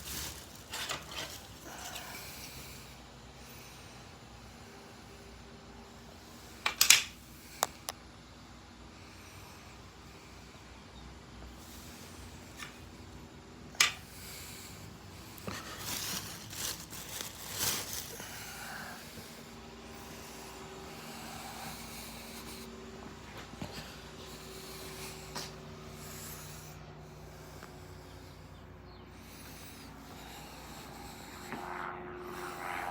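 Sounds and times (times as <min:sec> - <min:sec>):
handling noises on case: 0:00.0 - 0:02.6, 0:15.3 - 0:18.9
cooling fans humming: 0:00.0 - 0:32.9.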